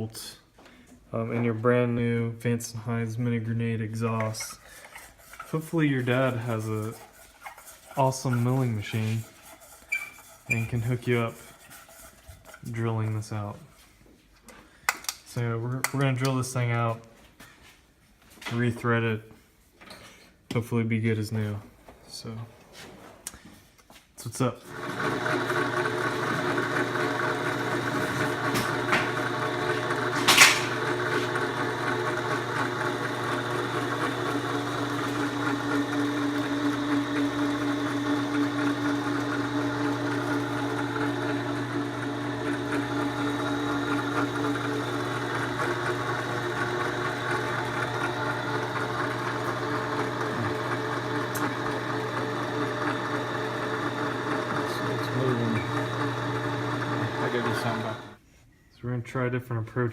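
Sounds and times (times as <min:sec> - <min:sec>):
sharp screech: 0:09.8 - 0:10.9
spindle motor running: 0:24.7 - 0:58.2.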